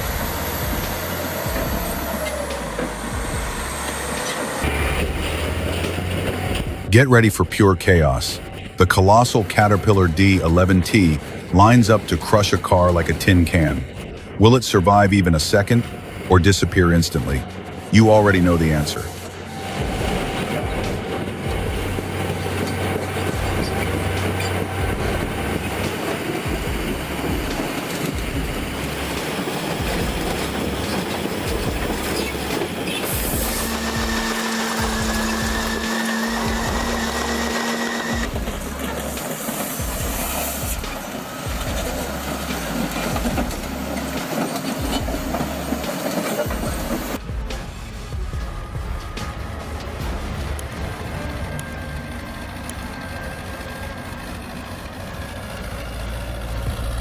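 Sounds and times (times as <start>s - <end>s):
heavy machinery clanking: 0.0s - 6.9s, 8.4s - 57.0s
heavy rumble and clatter: 0.0s - 7.0s, 15.1s - 57.0s
music with deep pulsing bass: 0.0s - 7.0s, 7.7s - 57.0s
bulldozer diesel engine droning: 0.0s - 57.0s
high hiss: 19.0s - 51.3s.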